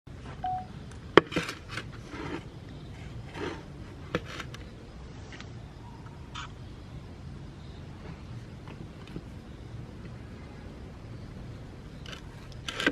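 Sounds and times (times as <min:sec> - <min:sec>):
rustling and scraping: 0:01.2 - 0:05.6, 0:12.0 - 0:12.9.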